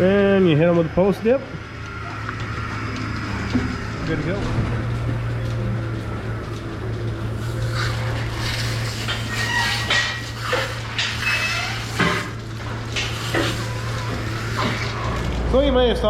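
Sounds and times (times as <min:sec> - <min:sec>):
milking machinery hum: 0:00.0 - 0:15.6
hissing and clattering bursts: 0:01.8 - 0:05.3, 0:06.5 - 0:15.4.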